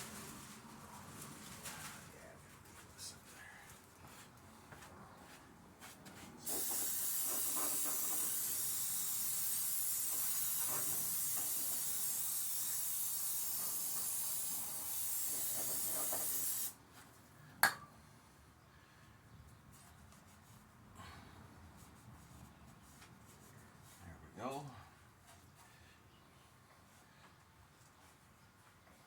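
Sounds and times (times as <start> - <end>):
pressurised spray hissing: 6.4 - 16.8.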